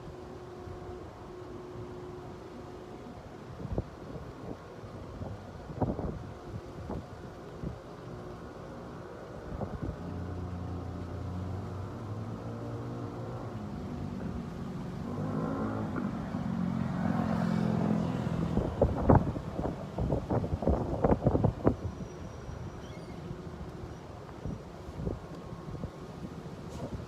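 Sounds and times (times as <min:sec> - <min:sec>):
wind buffeting microphone: 0:03.4 - 0:07.9, 0:09.2 - 0:10.9, 0:13.8 - 0:27.0.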